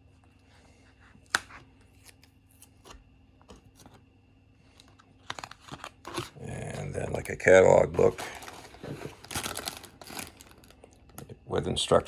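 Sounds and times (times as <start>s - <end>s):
packaging rustling: 8.0s - 11.2s.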